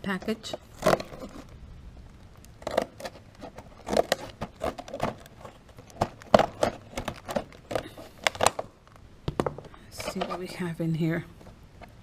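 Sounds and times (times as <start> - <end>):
packaging tearing and crackling: 0.7 - 9.0.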